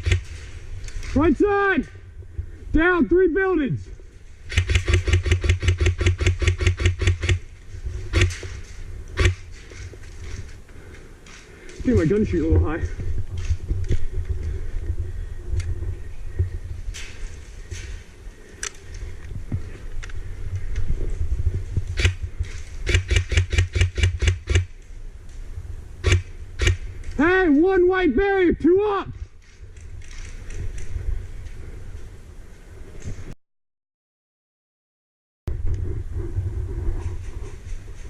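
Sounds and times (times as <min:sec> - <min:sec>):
airsoft rifle shots: 0:00.0 - 0:00.4, 0:04.5 - 0:07.4, 0:08.1 - 0:08.4, 0:09.2 - 0:09.4, 0:22.8 - 0:24.7, 0:26.0 - 0:26.8
steady low rumble: 0:00.0 - 0:27.3, 0:35.5 - 0:38.0
airsoft gun firing: 0:04.5 - 0:07.4.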